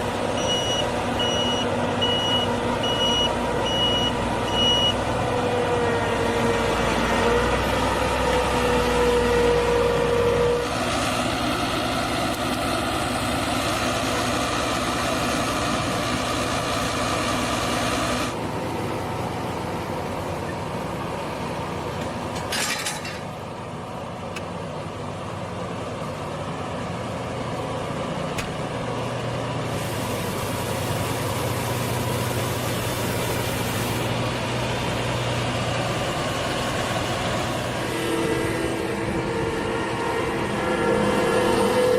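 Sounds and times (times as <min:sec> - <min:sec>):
combine harvester engine running: 0:00.0 - 0:41.9
steady whine: 0:25.2 - 0:41.9.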